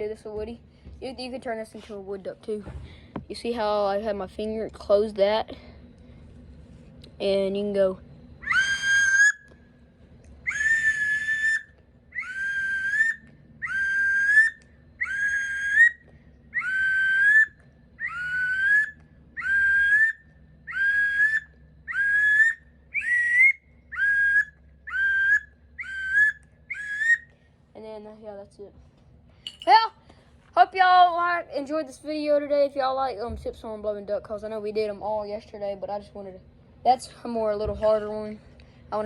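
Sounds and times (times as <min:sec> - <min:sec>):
duck call squealing whistles: 0:08.4 - 0:09.5, 0:10.5 - 0:16.0, 0:16.6 - 0:27.2.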